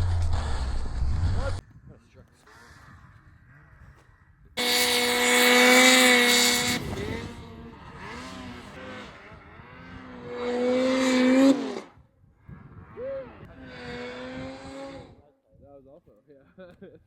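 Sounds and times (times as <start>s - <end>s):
snowmobile engine revving: 0.0s - 15.3s.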